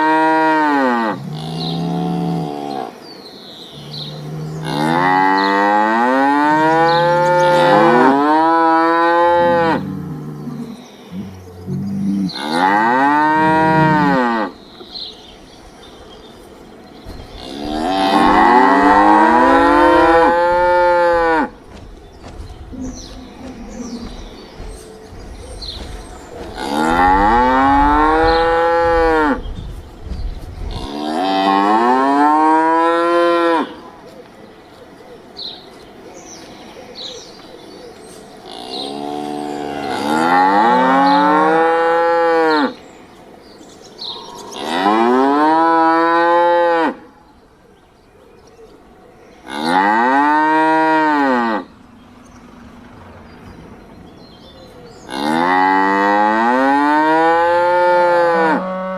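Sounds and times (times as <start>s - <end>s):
cow mooing: 3.8s - 14.6s, 17.2s - 21.6s, 22.7s - 29.5s, 55.1s - 58.9s.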